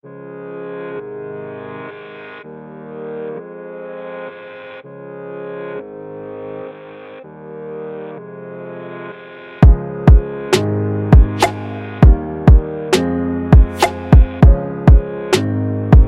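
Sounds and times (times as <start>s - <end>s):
sustained synthesizer chords: 0.0s - 16.0s
electronic music with steady beat: 9.6s - 16.0s.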